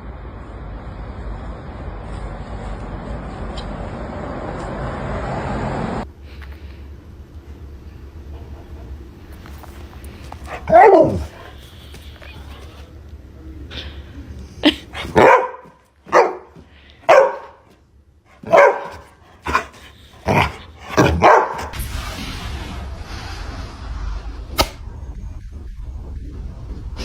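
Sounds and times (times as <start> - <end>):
dog barking: 10.4 - 11.6, 15.0 - 17.7, 18.3 - 21.8.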